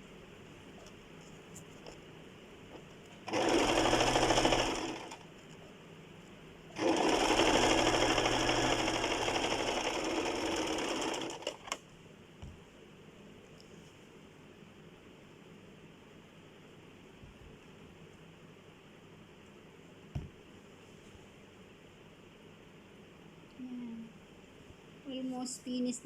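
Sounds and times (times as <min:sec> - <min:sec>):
sewing machine stitching: 0:03.3 - 0:05.2, 0:06.8 - 0:11.8.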